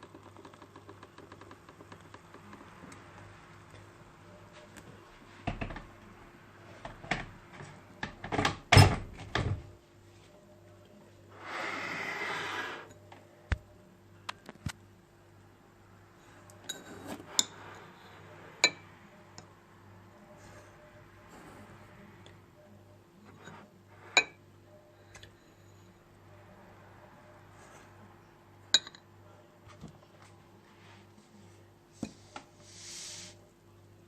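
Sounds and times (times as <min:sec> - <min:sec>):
steady hiss: 0:32.6 - 0:33.5.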